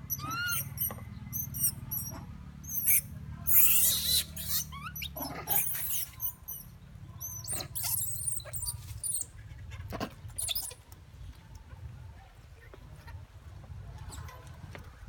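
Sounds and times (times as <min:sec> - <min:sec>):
baby monkey squeaking and squealing: 0:00.1 - 0:09.4, 0:10.4 - 0:10.8.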